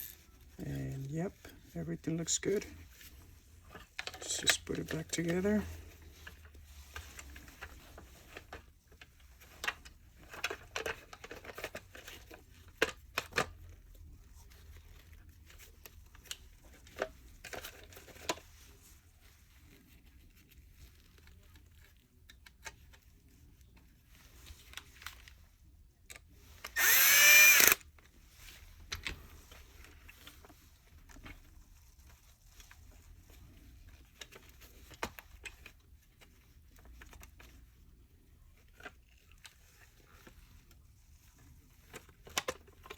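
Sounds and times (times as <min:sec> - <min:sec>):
cordless power screwdriver running: 0:26.7 - 0:27.8.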